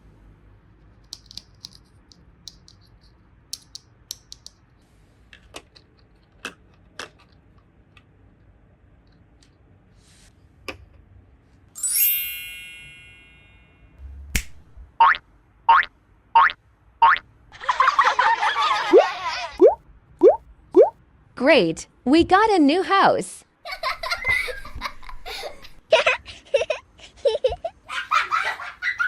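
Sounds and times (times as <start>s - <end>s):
plastic toy pieces clicking: 1.0s - 4.6s
bright chime sound effect: 11.8s - 14.0s.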